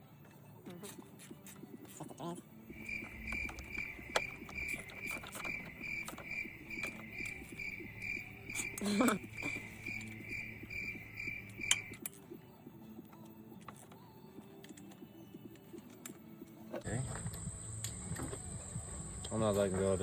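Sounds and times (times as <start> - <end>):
cricket chirping: 2.7 - 12.0.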